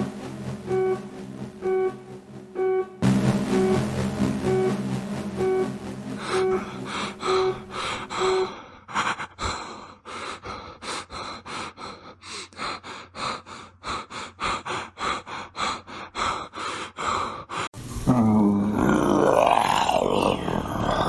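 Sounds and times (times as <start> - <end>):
repeated music note: 0.0 - 8.5.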